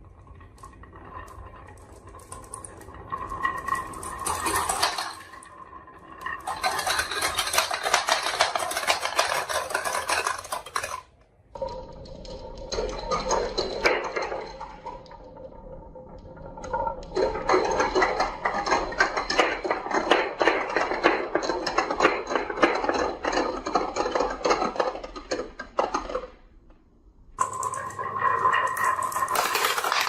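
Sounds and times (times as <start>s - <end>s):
marbles clattering down wooden run: 1.3s - 15.4s, 16.4s - 26.4s, 27.4s - 30.0s.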